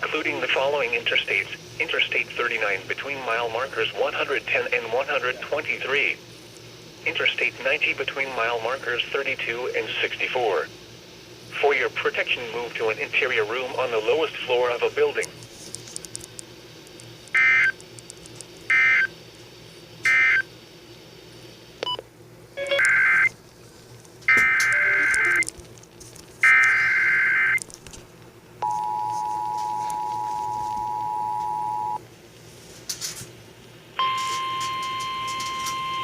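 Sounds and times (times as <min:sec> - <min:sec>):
two-tone attention signal: 0:24.3 - 0:25.5, 0:28.6 - 0:32.0, 0:34.0 - 0:36.0
warbling digital data bursts: 0:24.3 - 0:25.5
single steady tone: 0:28.6 - 0:32.0.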